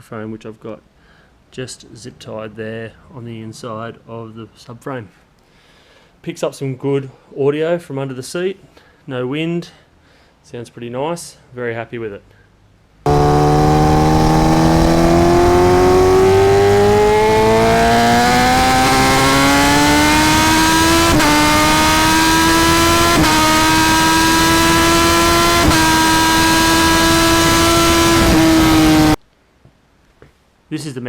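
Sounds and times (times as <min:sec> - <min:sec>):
gear upshifts: 0:13.1 - 0:29.2
motorcycle engine accelerating: 0:13.1 - 0:29.2.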